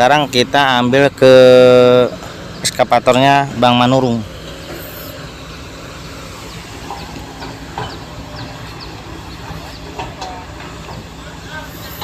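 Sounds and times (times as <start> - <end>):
diesel excavator engine running: 0.0 - 12.0
short high squeaks: 4.7 - 5.2.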